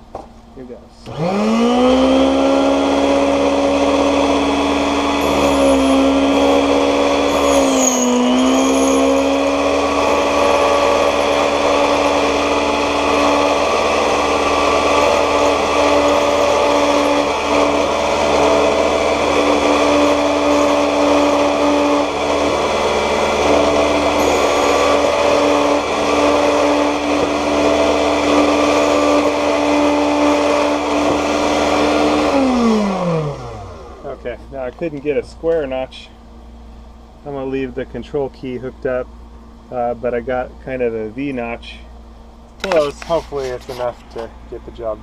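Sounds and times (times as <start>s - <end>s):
key-cutting machine motor humming: 1.1s - 34.1s.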